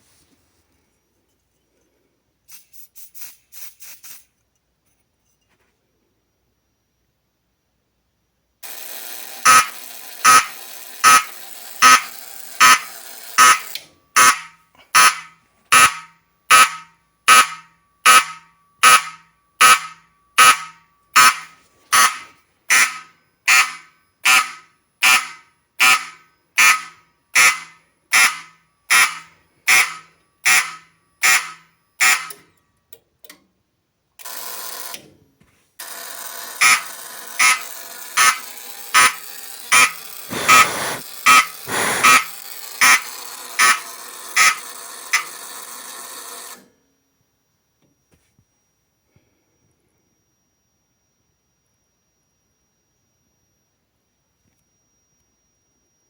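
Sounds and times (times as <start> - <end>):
steady noise: 40.3 - 41.0, 41.7 - 42.2
fire alarm pulsing: 41.7 - 42.2.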